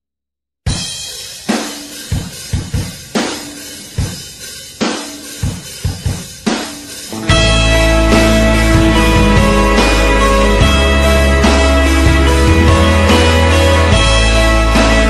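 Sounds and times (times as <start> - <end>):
drum kit beat: 0.7 - 15.0
band playing: 7.1 - 15.0.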